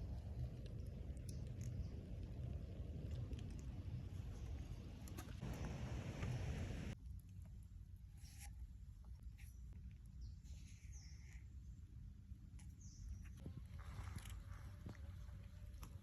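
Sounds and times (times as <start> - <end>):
low rumble: 0.0 - 7.0.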